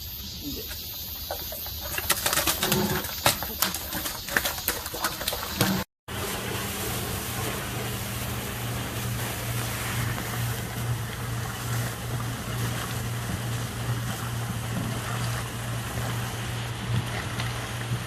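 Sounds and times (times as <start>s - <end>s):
low motor hum: 5.6s - 18.0s.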